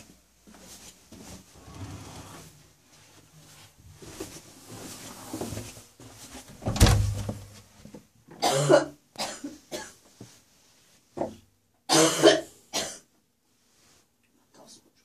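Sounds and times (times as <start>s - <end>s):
woman coughing: 8.4s - 10.0s, 11.9s - 13.1s.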